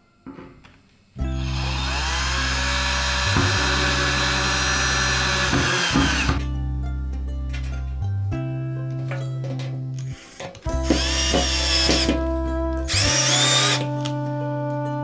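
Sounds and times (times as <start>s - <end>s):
background music: 1.1s - 15.0s
angle grinder whining: 1.3s - 6.5s, 10.0s - 14.1s.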